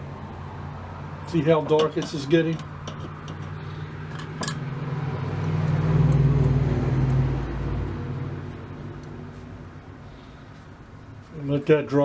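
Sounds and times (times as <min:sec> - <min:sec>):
passing vehicle rumble: 0:00.0 - 0:11.6.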